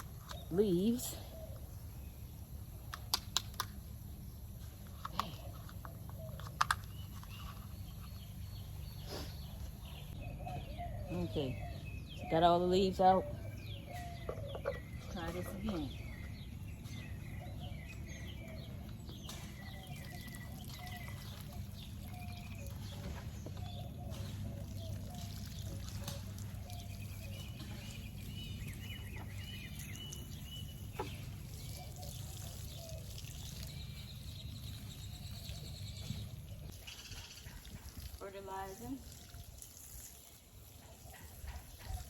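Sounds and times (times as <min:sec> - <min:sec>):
birds chirping: 0:00.0 - 0:42.0
liquid trickling onto plants: 0:19.5 - 0:23.0, 0:23.8 - 0:35.7, 0:37.6 - 0:40.8.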